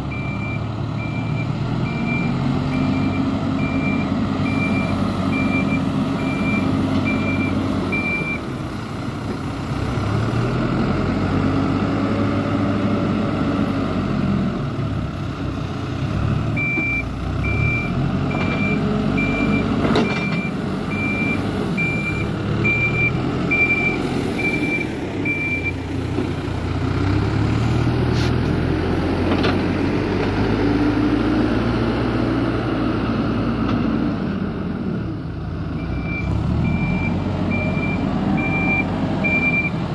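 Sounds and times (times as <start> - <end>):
heavy engine revving: 0.0 - 39.9
reversing alarm beeping: 0.1 - 8.4, 16.6 - 25.8, 35.8 - 39.8.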